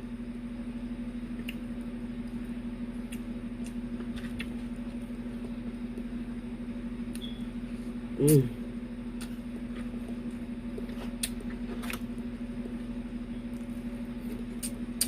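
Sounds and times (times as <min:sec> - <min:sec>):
appliance motor hum: 0:00.0 - 0:15.0
eating clicks and smacks: 0:01.4 - 0:01.6, 0:11.2 - 0:12.0, 0:14.5 - 0:15.0.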